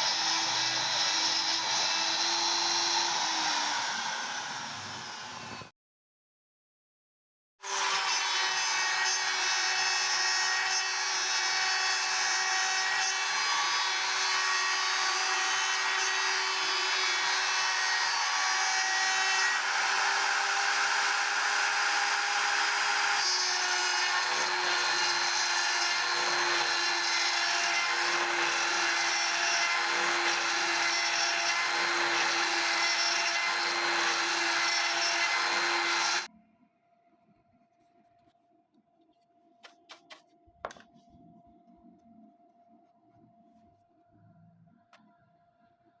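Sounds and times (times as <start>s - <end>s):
router spindle whining: 0.0s - 5.7s, 7.7s - 36.3s.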